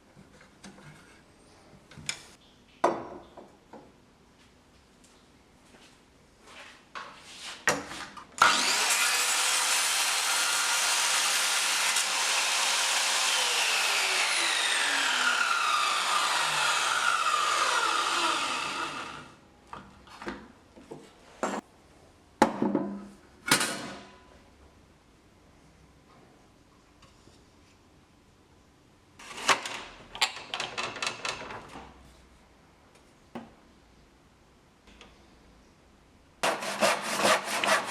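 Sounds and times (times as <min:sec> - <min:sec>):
power tool cutting wood: 0:08.4 - 0:19.4, 0:36.4 - 0:37.9.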